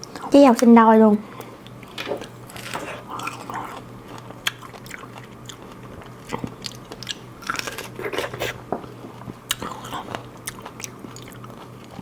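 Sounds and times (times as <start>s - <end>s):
chewing strawberry: 2.5s - 12.0s.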